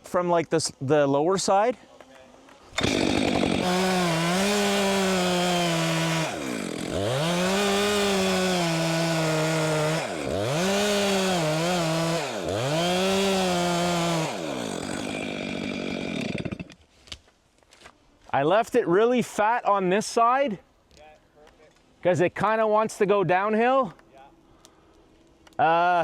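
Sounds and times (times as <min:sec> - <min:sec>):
chainsaw cutting tree trunk: 0:02.7 - 0:16.8.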